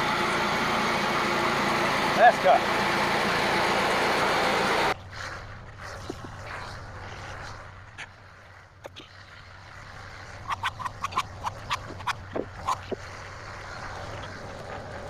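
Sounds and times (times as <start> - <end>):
sawmill engine running: 0.0 - 5.0.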